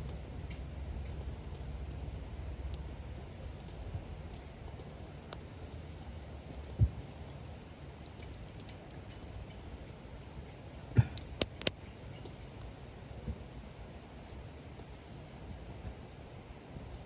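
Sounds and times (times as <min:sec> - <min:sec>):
campfire rumbling: 0:00.0 - 0:17.0
fire crackling pops: 0:00.0 - 0:17.0
faint high chirps: 0:00.4 - 0:01.9, 0:08.0 - 0:12.7.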